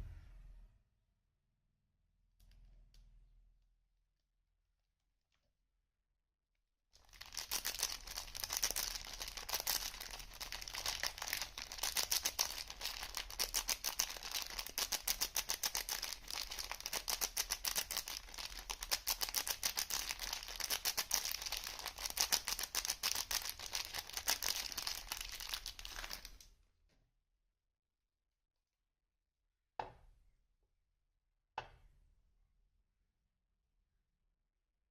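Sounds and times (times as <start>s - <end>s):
wrapper crinkling and tearing: 7.0s - 26.4s.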